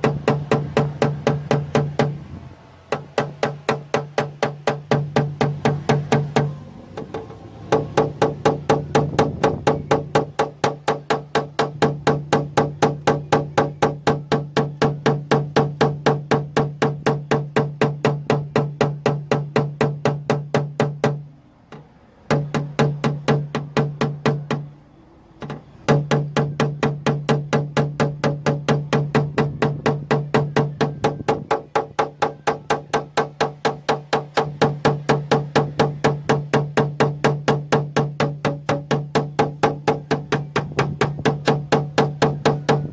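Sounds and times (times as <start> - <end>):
hammer tapping sheet metal: 25.4 - 42.9.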